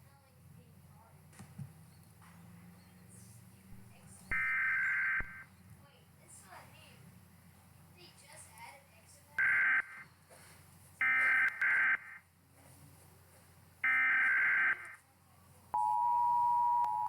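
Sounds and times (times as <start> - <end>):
two-tone attention signal: 4.3 - 5.4, 15.8 - 17.0.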